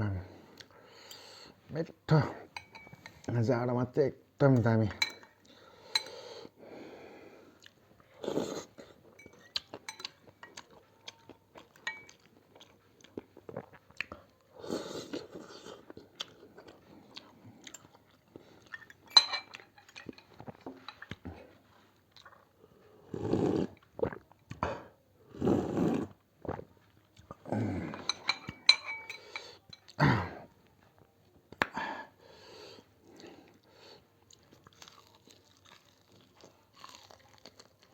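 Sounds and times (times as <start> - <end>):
chewing noodle soup: 7.4 - 31.2, 32.6 - 37.9.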